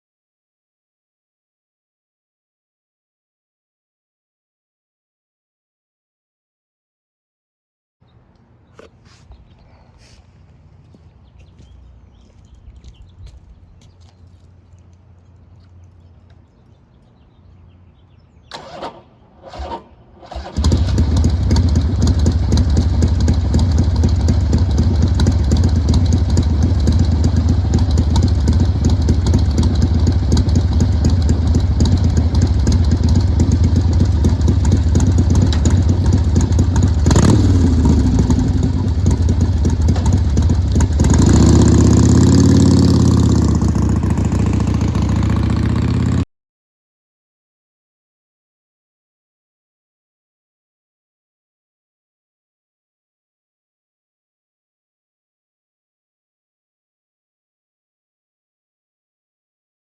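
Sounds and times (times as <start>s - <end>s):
motorcycle engine starting and revving: 18.5s - 46.2s.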